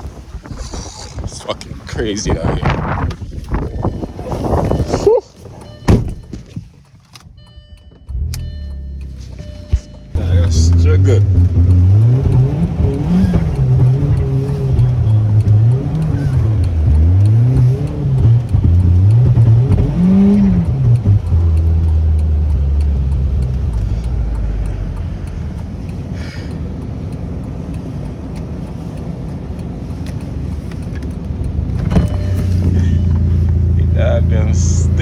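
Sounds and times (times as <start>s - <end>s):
car engine revving: 0.1s - 6.6s, 8.0s - 35.0s.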